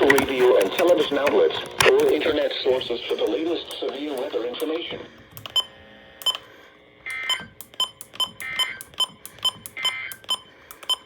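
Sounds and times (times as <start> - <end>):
short electronic beeps: 7.1 - 11.0.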